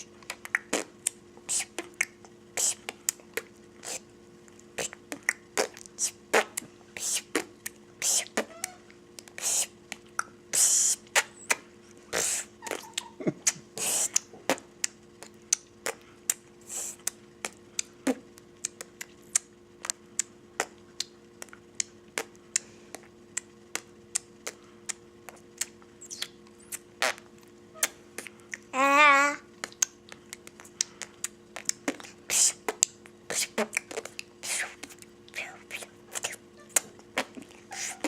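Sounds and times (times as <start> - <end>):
girl tongue clicks and lip pops: 0.2 - 10.4, 12.2 - 28.7, 29.6 - 38.0
girl making short hisses: 9.4 - 9.7, 12.1 - 12.9, 13.8 - 14.2, 37.7 - 38.0.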